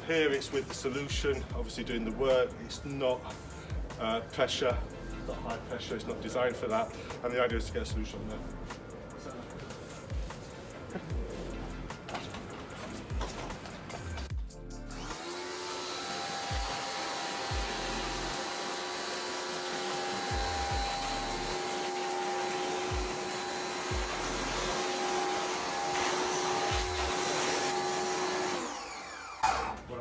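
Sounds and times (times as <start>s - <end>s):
pressure washer spraying: 15.0s - 29.8s
pressure washer motor hum: 15.0s - 30.0s.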